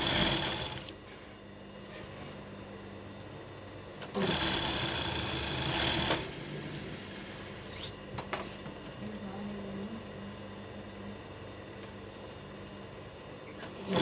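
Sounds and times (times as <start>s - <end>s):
sewing machine running: 0.0s - 0.9s, 4.1s - 7.6s, 13.8s - 14.0s.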